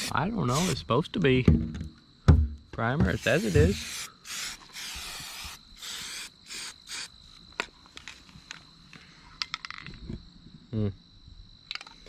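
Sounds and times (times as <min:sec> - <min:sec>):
aerosol spray can hissing: 0:00.0 - 0:00.8, 0:03.1 - 0:07.1.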